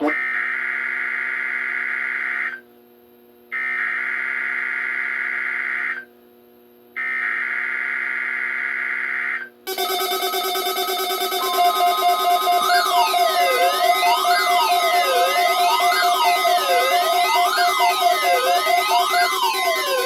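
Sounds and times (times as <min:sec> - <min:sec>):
digital data bursts: 0:09.7 - 0:20.0
electronic tone pattern: 0:09.7 - 0:20.0.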